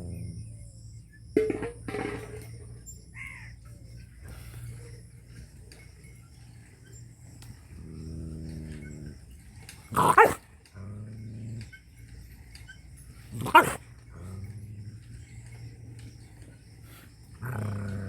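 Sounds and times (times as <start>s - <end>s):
dog growling: 0.0s - 0.7s, 7.7s - 11.9s, 13.2s - 15.8s, 17.1s - 18.0s
dog barking: 9.9s - 10.4s, 13.4s - 13.8s.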